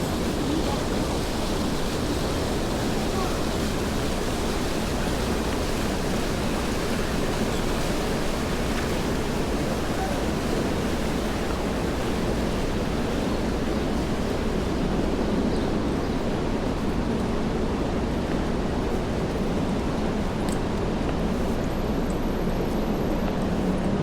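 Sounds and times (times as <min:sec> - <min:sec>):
city traffic noise: 0:00.0 - 0:24.0.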